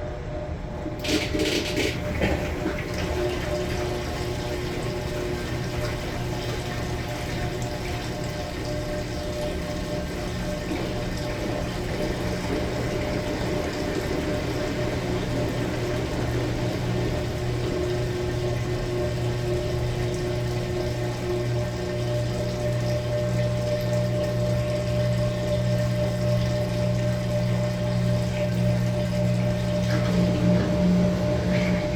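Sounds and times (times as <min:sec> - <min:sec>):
low motor hum: 0:00.0 - 0:31.9
water sloshing in tub: 0:00.8 - 0:31.9.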